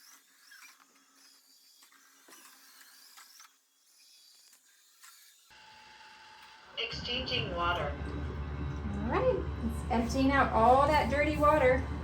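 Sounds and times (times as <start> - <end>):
robot vacuum whirring and clicking: 0.0 - 5.6
low steady hum: 6.8 - 12.0.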